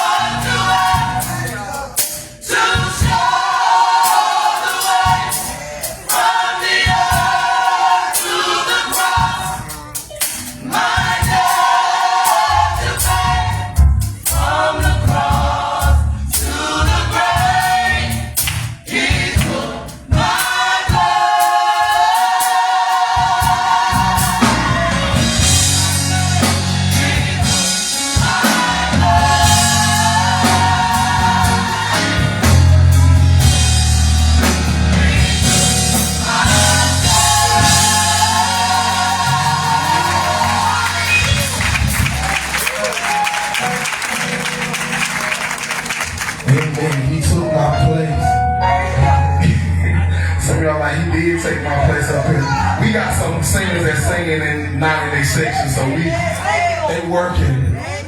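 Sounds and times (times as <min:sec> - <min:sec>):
gospel choir singing: 0:00.0 - 0:58.0
low bass accompaniment: 0:24.0 - 0:42.8.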